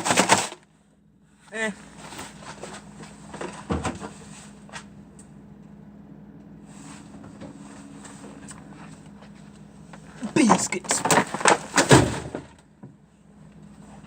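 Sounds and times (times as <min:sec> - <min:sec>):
food containers clattering: 0:00.0 - 0:00.6, 0:10.2 - 0:12.6
steady low hum: 0:00.6 - 0:14.0.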